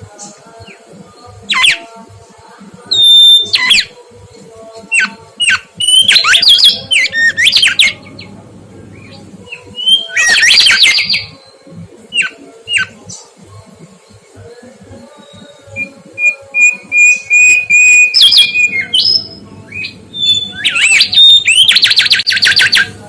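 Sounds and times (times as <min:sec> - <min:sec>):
bird whistling downward notes: 0:02.9 - 0:03.9, 0:05.4 - 0:08.3, 0:09.8 - 0:11.3, 0:15.2 - 0:22.9.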